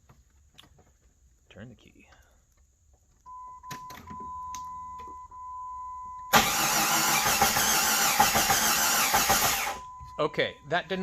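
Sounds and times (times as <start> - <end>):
engine cranking without firing: 6.3 - 9.8.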